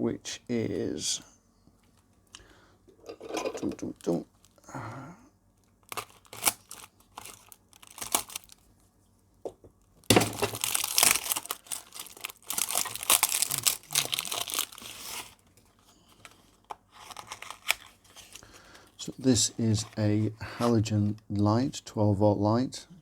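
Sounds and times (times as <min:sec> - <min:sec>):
packaging crinkling and tearing: 0:05.6 - 0:08.7, 0:10.0 - 0:20.2.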